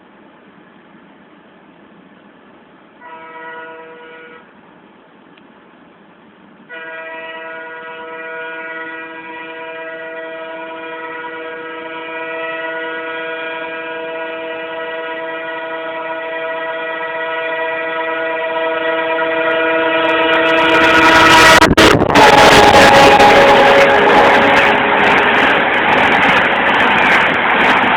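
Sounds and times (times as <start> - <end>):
locomotive horn blaring: 3.0 - 4.5, 6.7 - 26.9.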